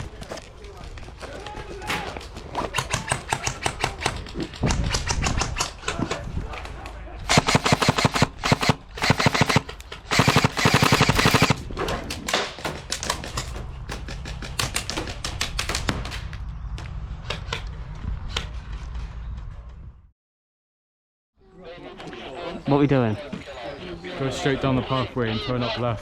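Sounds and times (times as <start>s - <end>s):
airsoft gun bursts: 7.3s - 11.6s
airsoft single shots: 7.3s - 11.6s.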